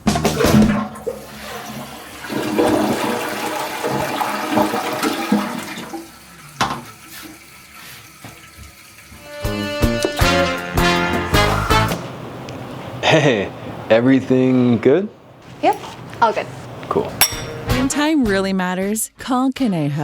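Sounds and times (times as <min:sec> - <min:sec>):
toilet flushing: 0:00.0 - 0:12.2.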